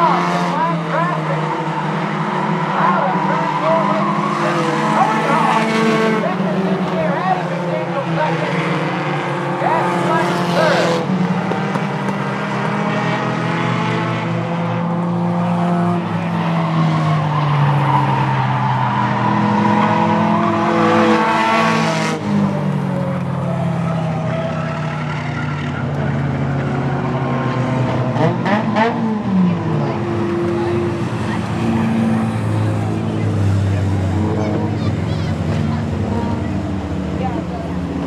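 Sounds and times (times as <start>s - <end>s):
race car engines: 0.0s - 38.0s
race car passing close: 0.0s - 38.0s.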